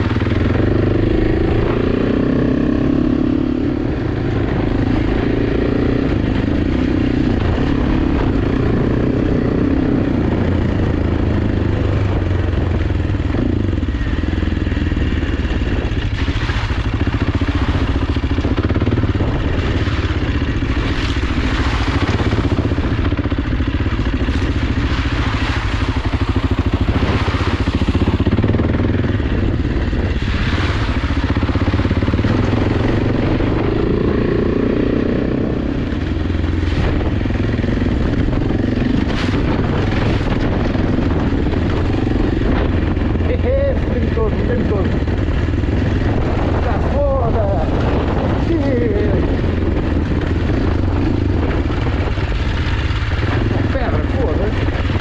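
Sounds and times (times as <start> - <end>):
motorcycle engine revving: 0.0 - 55.0
clatter and rattling: 49.1 - 55.0.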